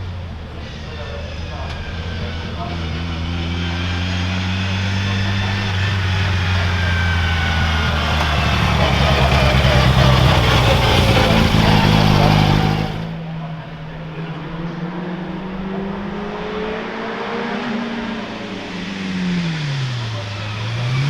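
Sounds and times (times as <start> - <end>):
race car engine running: 0.0 - 16.2.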